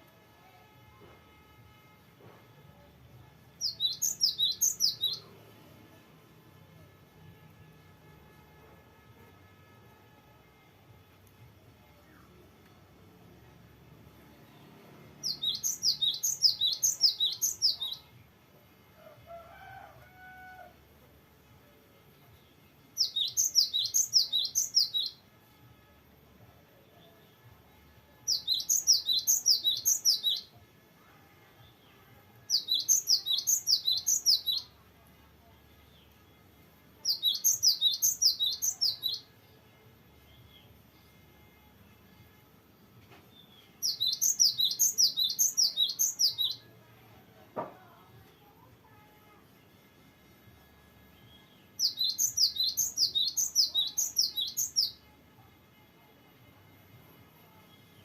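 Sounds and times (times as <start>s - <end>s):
bird whistled song: 15.2s - 18.1s, 23.0s - 25.2s, 28.3s - 30.5s, 37.1s - 39.2s, 51.3s - 55.0s.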